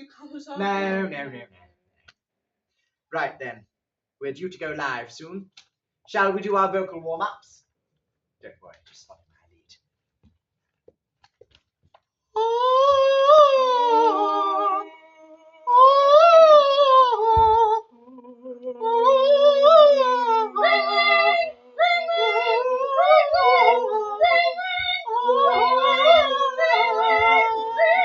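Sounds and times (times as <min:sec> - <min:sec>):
voices singing vocal warm-up: 0:12.4 - 0:28.0.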